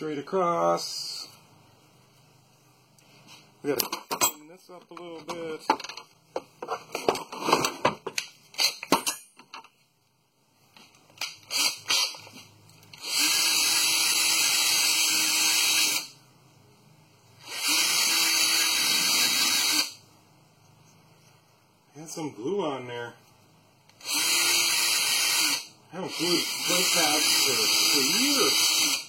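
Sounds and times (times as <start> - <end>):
hand-held power tool running: 13.0 - 16.2, 17.4 - 20.0, 24.0 - 29.0.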